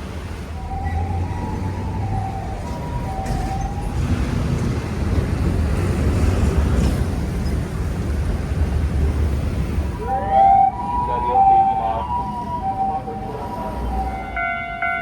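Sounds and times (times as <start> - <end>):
train wheels rumbling on rail: 0.0 - 11.3.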